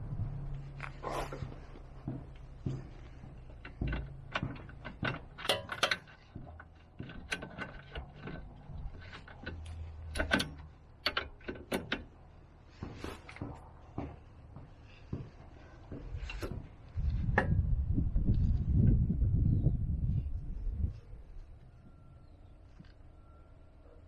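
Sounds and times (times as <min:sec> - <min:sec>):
hand tools and metal parts clinking: 0:00.8 - 0:17.6.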